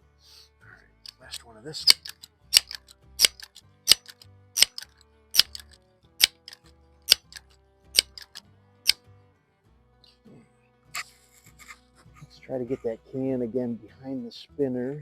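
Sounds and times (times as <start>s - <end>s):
air rifle pump lever clicking: 1.1s - 8.4s.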